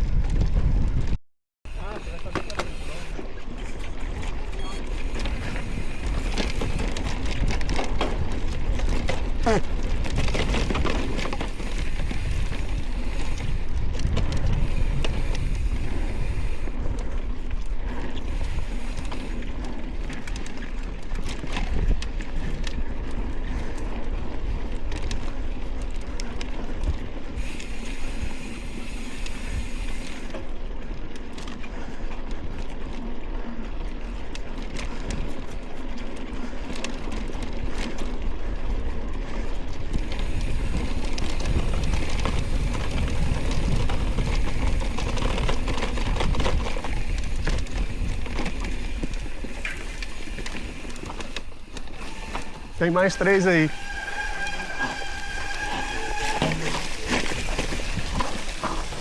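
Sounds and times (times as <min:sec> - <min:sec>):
wind on microphone: 0:00.0 - 0:19.5, 0:38.3 - 0:59.0
bike clicks and rattles: 0:00.0 - 0:59.0
bike tyres on dirt and stones: 0:00.0 - 0:59.0.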